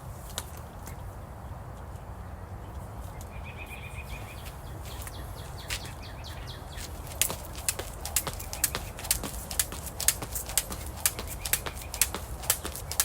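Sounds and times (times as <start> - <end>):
sharp taps or steps: 6.8 - 13.0.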